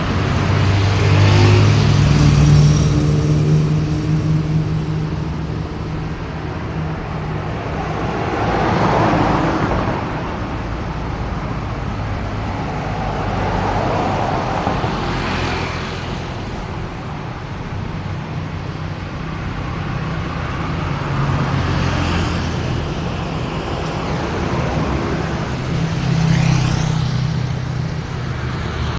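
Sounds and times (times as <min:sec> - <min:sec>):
road traffic rumble: 0:00.0 - 0:28.9
vehicles passing: 0:00.0 - 0:28.9.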